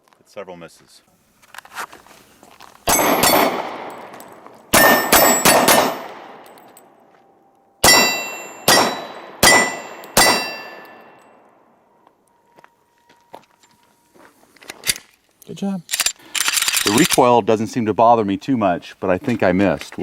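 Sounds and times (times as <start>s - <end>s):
pistol shots: 2.9s - 6.6s, 7.8s - 11.2s
steel plate target ringing: 2.9s - 6.7s, 7.8s - 11.6s.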